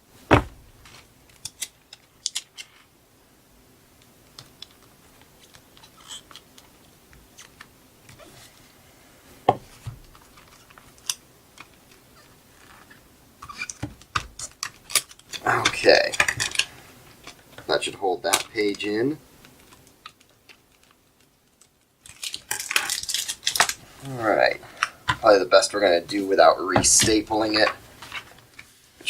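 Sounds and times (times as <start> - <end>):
tape and paper rustling: 4.3 - 8.6, 9.7 - 24.2.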